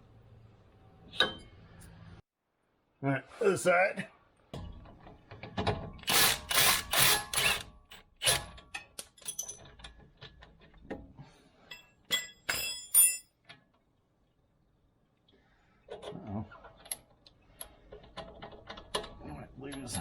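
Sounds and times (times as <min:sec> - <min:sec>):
tool clicks and clanks: 0:04.9 - 0:11.0
ringing metal clinks: 0:11.7 - 0:13.3.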